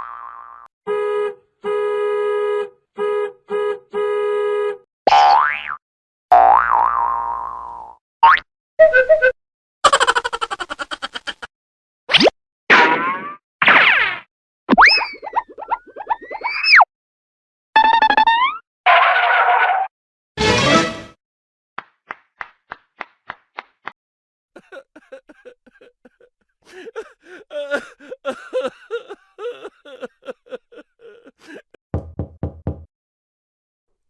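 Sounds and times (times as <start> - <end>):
cartoon tire screech effect: 17.8 - 21.1
hand claps: 21.8 - 24.0
person crying and sobbing: 24.6 - 31.8
knocks on a door: 31.9 - 32.9.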